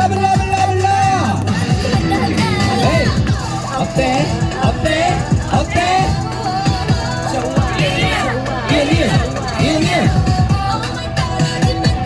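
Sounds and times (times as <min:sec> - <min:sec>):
loud dance track: 0:00.0 - 0:12.0
synth melody: 0:01.4 - 0:04.9.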